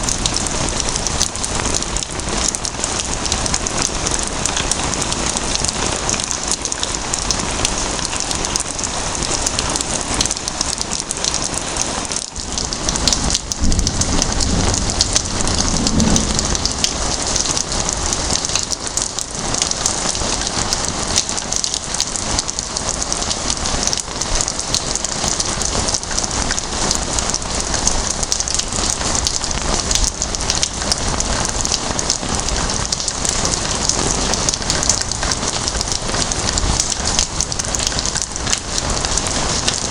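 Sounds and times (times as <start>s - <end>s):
heavy rain patter: 0.0s - 39.9s
low rumble: 13.0s - 18.4s.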